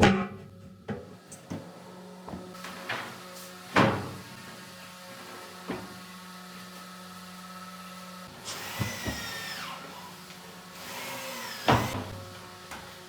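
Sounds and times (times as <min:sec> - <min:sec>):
small power tool whining: 0:08.2 - 0:12.7.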